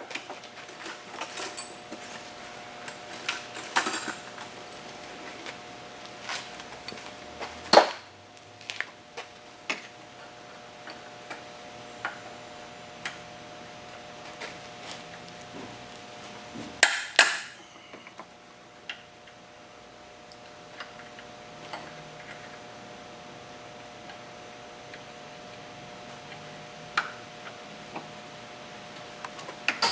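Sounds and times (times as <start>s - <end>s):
faint steady hum: 0.0s - 29.9s
metal tools clanking: 0.7s - 4.9s.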